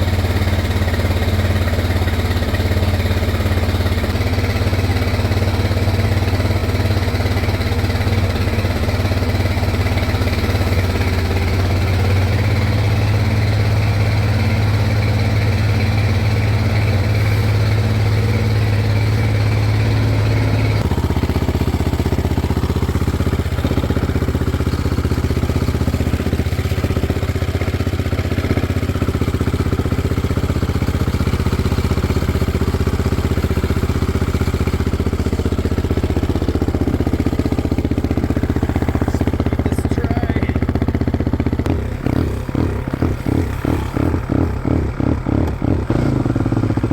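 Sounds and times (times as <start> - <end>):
single-cylinder engine running: 0.0 - 46.9.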